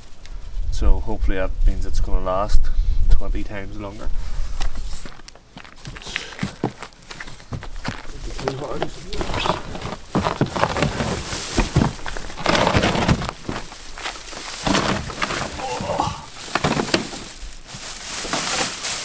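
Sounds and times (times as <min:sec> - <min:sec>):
packaging rustling and crackling: 0:04.9 - 0:19.0.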